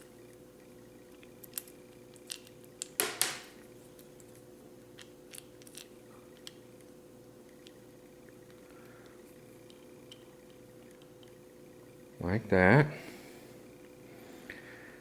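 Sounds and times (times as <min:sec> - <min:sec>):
faint steady hum: 0:00.0 - 0:15.0
small sharp clicks and scrapes: 0:01.1 - 0:03.1, 0:03.9 - 0:06.9.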